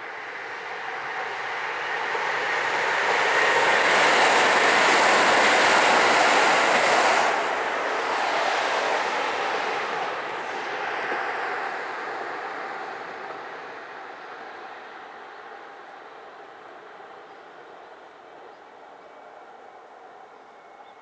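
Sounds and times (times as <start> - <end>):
train passing: 0.0 - 21.0.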